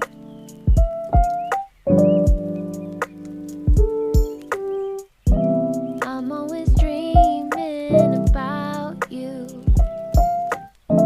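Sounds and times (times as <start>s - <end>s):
song with drum beat: 0.0s - 10.8s.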